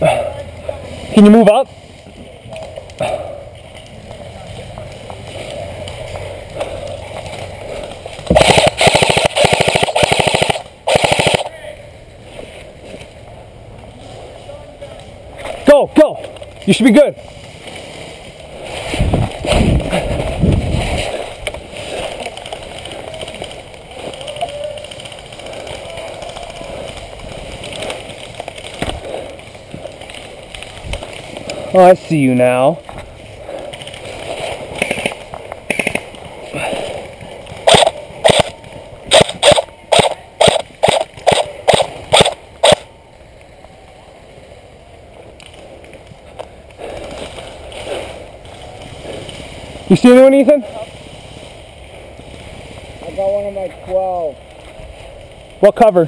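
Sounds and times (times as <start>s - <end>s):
low uneven rumbling: 0.0s - 8.4s
airsoft gun single shots: 8.3s - 11.5s, 37.6s - 42.9s
clothing rustling on microphone: 17.3s - 31.8s.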